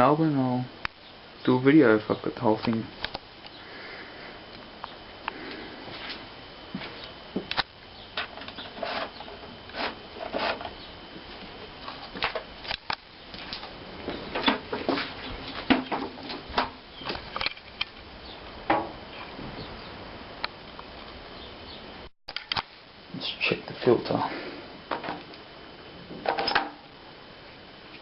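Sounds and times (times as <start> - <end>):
lawn mower parts clicking and knocking: 15.7 - 18.0, 26.2 - 26.8.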